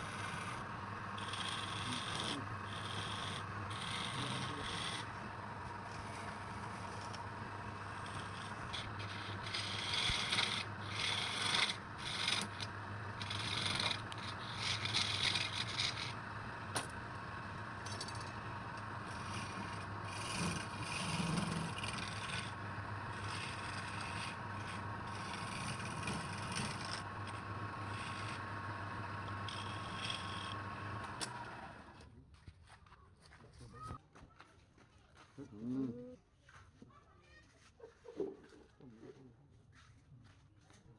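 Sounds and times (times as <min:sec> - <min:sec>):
tool scraping spinning wood: 0:00.0 - 0:32.0
wood lathe humming: 0:00.0 - 0:32.0.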